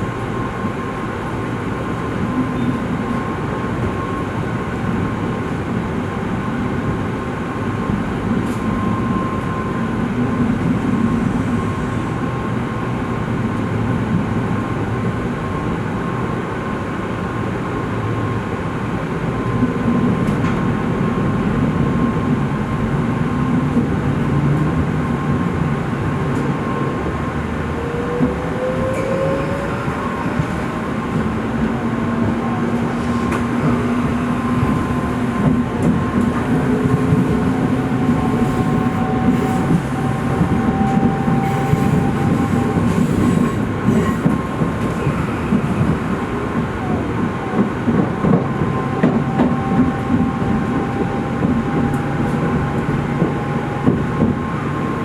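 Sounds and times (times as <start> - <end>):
train wheels rumbling: 19.5 - 55.0.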